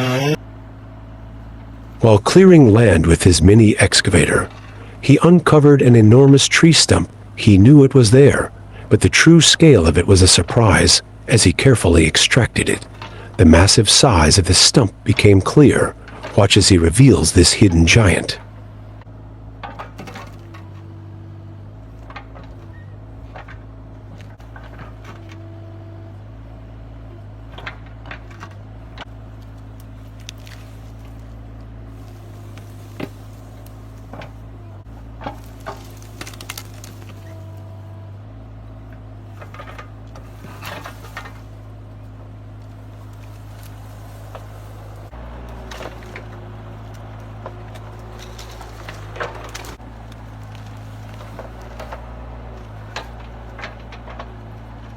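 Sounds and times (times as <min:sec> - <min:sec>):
excavator diesel engine running: 0:00.0 - 0:54.9
wood and roots cracking: 0:27.4 - 0:54.9.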